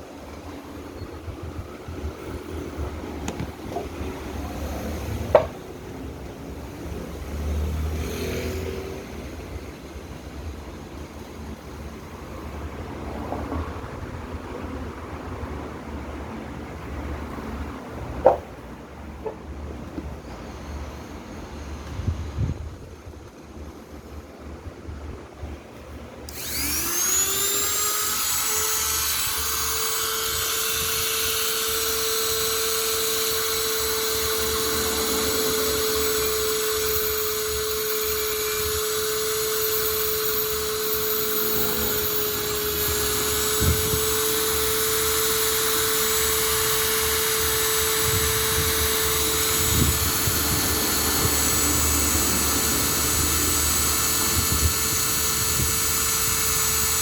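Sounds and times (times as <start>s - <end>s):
electric motor whining: 26.3s - 57.0s.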